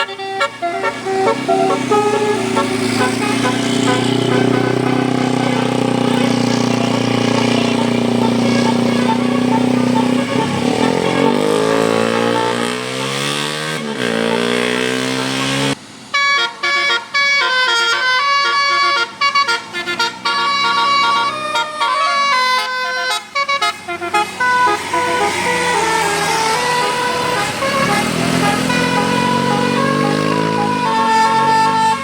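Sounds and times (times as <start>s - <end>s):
bus engine revving: 0.0s - 32.0s
multi-tone bus horn tune: 0.0s - 32.0s.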